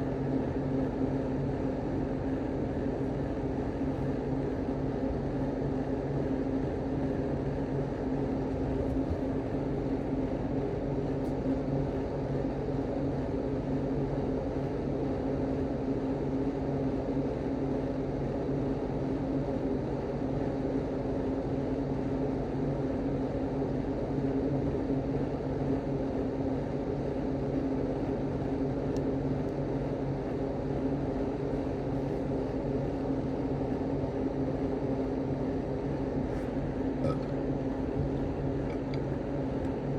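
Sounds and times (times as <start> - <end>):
low mechanical drone: 0.0 - 12.8, 31.2 - 39.9.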